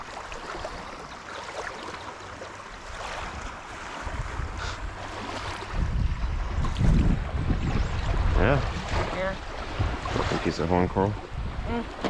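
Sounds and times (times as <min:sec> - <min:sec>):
small waves lapping at shore: 0:00.0 - 0:12.0
wind buffeting microphone: 0:02.9 - 0:12.0.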